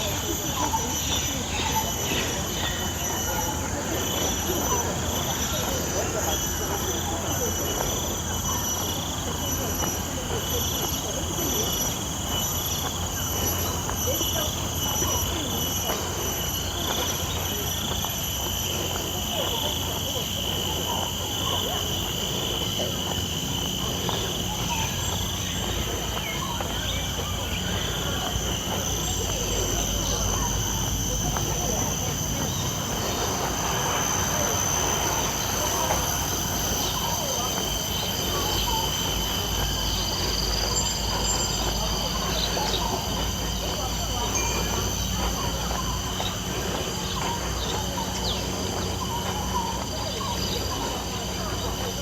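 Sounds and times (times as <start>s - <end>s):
insects droning: 0.0s - 52.0s
birds chirping and whistling: 20.9s - 52.0s.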